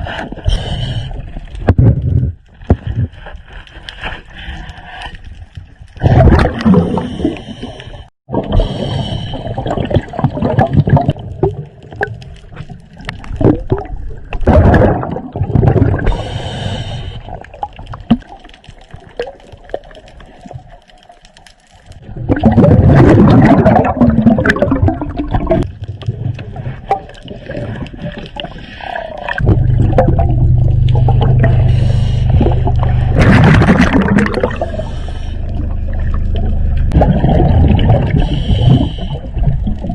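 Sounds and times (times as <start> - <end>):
diver exhaling gurgling bubbles: 6.0 - 18.4, 22.0 - 39.9
steady low hum: 29.4 - 39.2.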